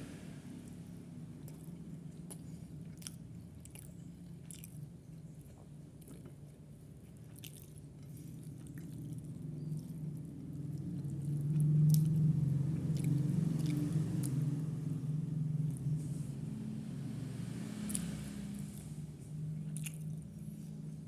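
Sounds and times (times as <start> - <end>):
person chewing food: 1.4 - 14.6, 17.9 - 21.0
low hum: 9.2 - 21.0.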